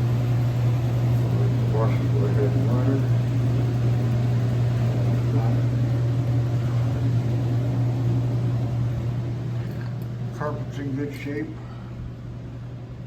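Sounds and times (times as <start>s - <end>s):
dryer and washer humming: 0.0s - 13.0s.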